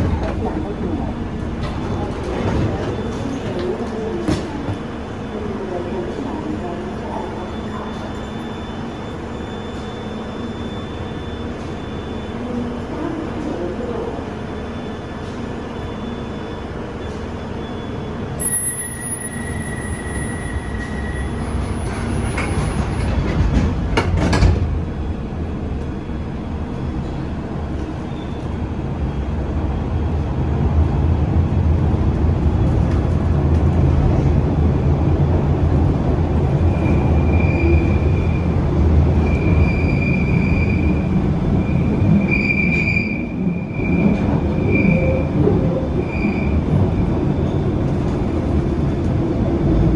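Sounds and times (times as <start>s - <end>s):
train rumbling through tunnel: 0.0s - 49.9s
wheel squeal: 15.8s - 23.2s, 36.7s - 38.5s, 39.2s - 46.8s.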